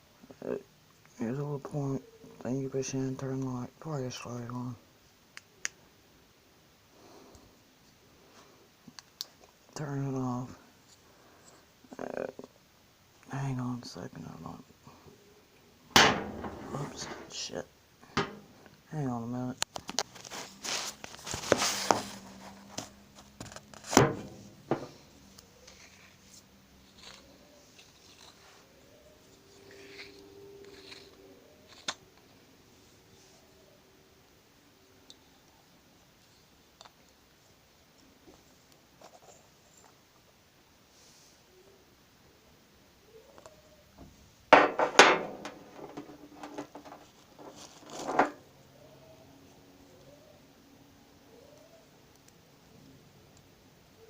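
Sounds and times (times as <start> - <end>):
loud knock: 16.0 - 16.7
hard objects clattering and knocking: 16.0 - 17.3, 18.1 - 18.7, 21.1 - 25.0, 44.5 - 48.4
rustling handling noise: 16.0 - 18.8, 19.6 - 32.3, 44.1 - 48.5.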